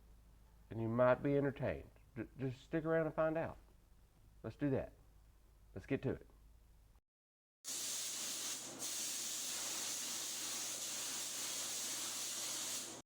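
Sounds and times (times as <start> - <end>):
spraying hiss: 7.7 - 13.0.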